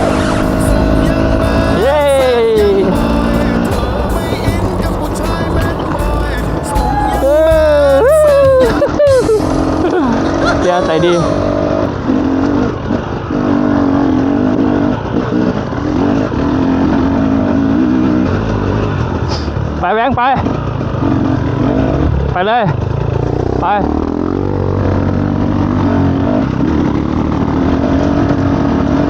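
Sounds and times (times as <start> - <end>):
background music: 0.0 - 11.8
dirt bike engines rumbling: 0.0 - 29.0.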